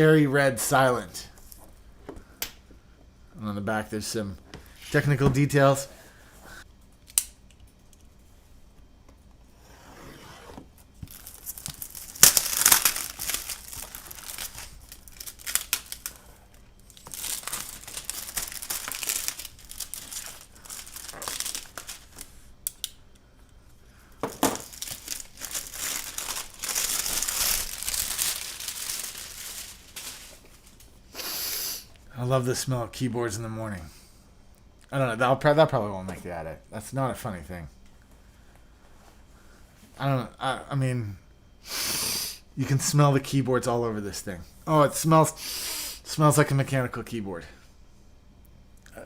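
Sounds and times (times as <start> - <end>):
plastic wrap tearing and crinkling: 11.0 - 22.3, 24.2 - 30.9.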